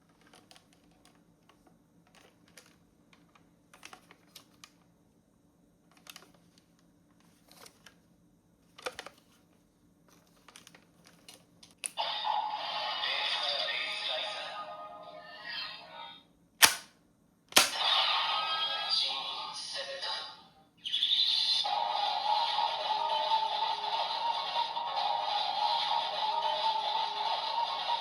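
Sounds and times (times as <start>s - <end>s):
plastic toy clicks and rattles: 0.1s - 1.2s
toy electronic sound effect: 20.8s - 28.0s.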